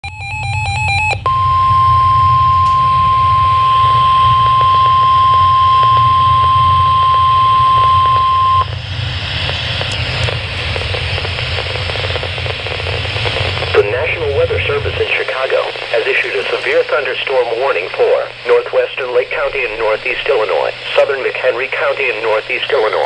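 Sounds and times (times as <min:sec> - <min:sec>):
warbling digital header tones: 0:00.2 - 0:08.7
radio hum and hiss: 0:01.3 - 0:23.0
static crackle: 0:01.4 - 0:23.0.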